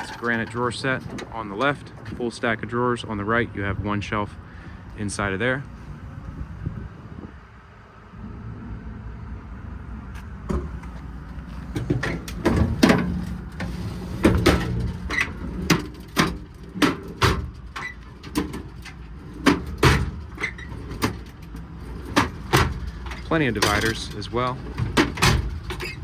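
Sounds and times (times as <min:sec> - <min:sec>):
metal drawers and doors clacking: 0:00.0 - 0:02.3, 0:11.7 - 0:26.0.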